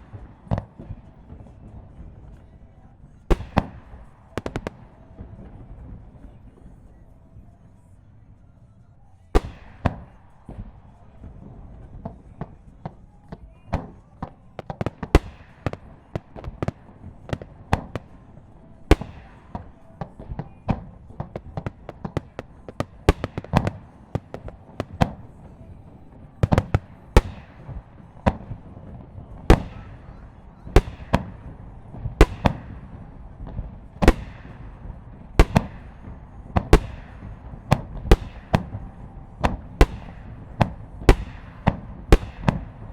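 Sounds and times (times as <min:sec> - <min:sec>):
firework crackle: 0:00.0 - 0:07.6, 0:09.4 - 0:42.9
rumble of distant bursts: 0:00.0 - 0:42.9
firework shells bursting: 0:14.6 - 0:42.9.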